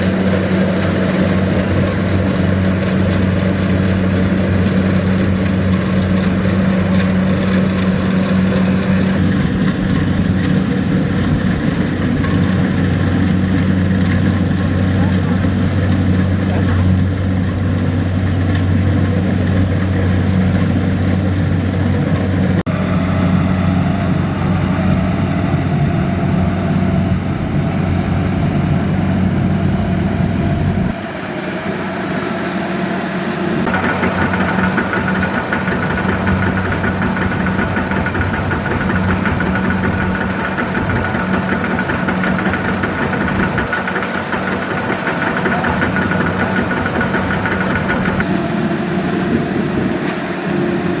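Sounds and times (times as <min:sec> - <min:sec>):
harvester diesel engine running: 0:00.0 - 0:51.0
steady high whine: 0:22.7 - 0:51.0.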